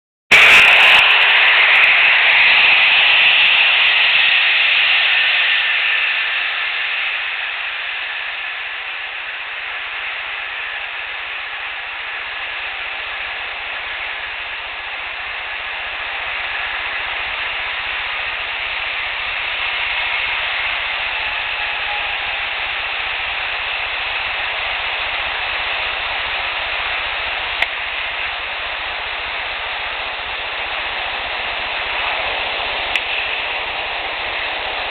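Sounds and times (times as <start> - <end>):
distant highway traffic: 0.3 - 34.9
sharp click: 32.9 - 33.3.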